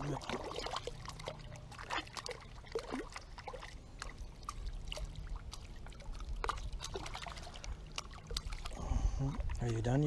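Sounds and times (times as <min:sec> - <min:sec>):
creek water splashing and trickling: 0:00.0 - 0:10.0
water drips and plops: 0:00.0 - 0:10.0.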